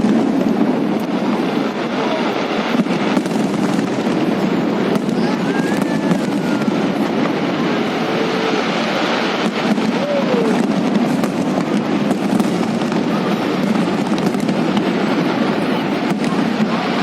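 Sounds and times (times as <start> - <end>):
firework whistle: 0.0 - 17.0
fireworks bursting and crackling: 0.0 - 17.0.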